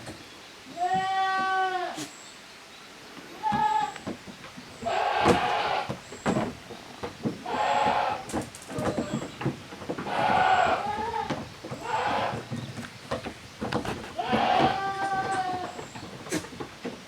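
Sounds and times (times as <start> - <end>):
goat kids bleating: 0.7 - 2.0, 4.8 - 6.0, 7.4 - 9.3, 10.0 - 12.5, 14.2 - 16.5.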